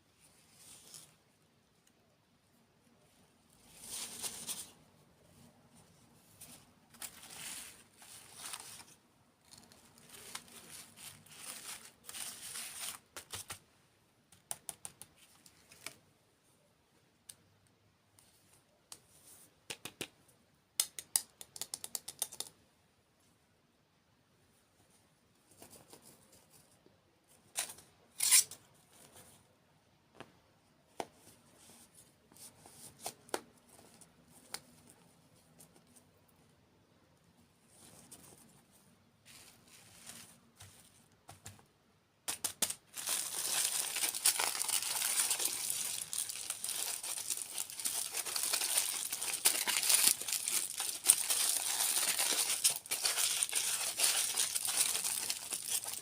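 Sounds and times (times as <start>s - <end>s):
sweet wrapper rustling and crinkling: 6.5s - 13.6s, 42.3s - 56.0s
crisp clicks and snaps of sweets: 14.3s - 16.0s, 19.6s - 22.6s, 41.1s - 56.0s.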